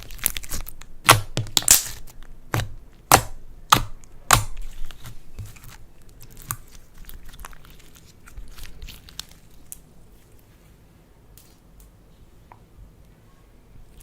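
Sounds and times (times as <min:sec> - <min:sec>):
slime crackling: 0:00.0 - 0:09.9.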